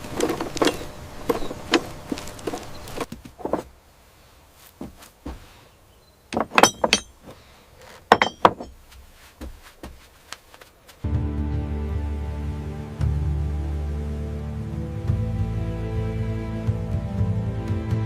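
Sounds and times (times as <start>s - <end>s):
loud knocks and ringing clinks: 6.4s - 7.4s, 8.1s - 8.8s
soft music: 11.0s - 18.0s.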